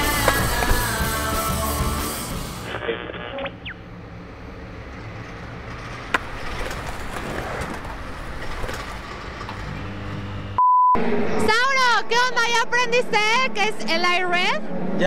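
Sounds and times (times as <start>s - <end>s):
low hum: 0.5s - 11.5s.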